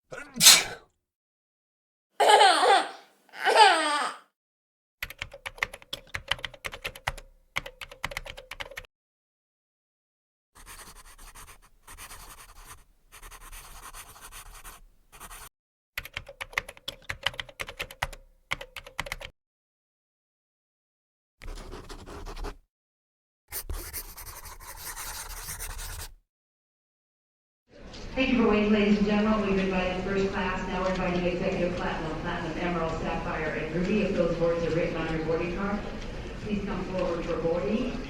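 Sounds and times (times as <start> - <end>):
person laughing: 2.2 - 4.2
typing on computer keyboard: 5.0 - 8.9, 16.0 - 19.3.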